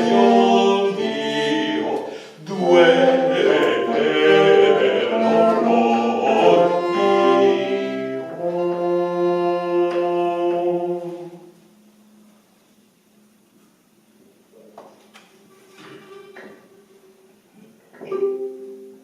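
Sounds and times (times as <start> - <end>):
early music trio playing chords: 0.0 - 14.5.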